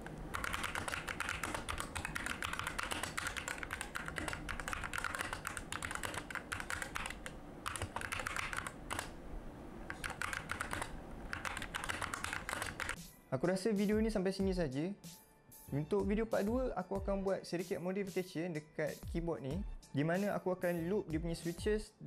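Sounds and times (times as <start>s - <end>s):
typing on mechanical keyboard: 0.0s - 9.2s, 9.8s - 13.0s.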